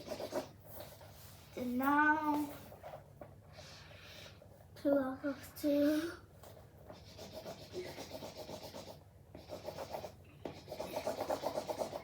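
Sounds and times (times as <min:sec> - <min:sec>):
pencil scribbling on paper: 0:00.0 - 0:01.1, 0:06.9 - 0:12.0.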